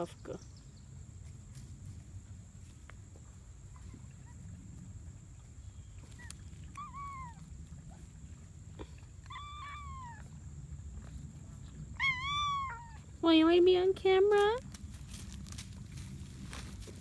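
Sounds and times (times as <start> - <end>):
cat meowing softly: 6.2 - 7.5, 9.2 - 10.4, 12.0 - 13.0.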